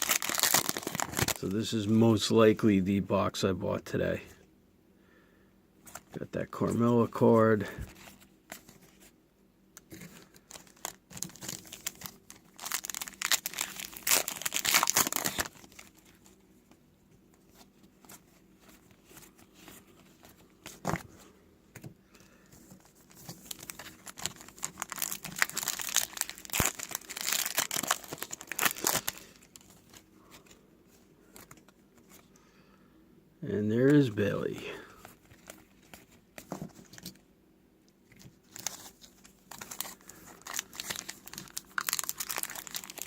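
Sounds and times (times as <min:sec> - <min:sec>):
foil wrapper crinkling and tearing: 0:00.0 - 0:01.9, 0:09.9 - 0:16.4, 0:22.6 - 0:30.5, 0:38.4 - 0:43.0.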